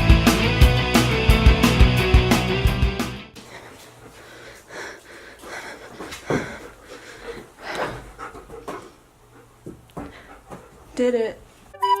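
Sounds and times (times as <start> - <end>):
rapid panting breaths: 3.4 - 11.3.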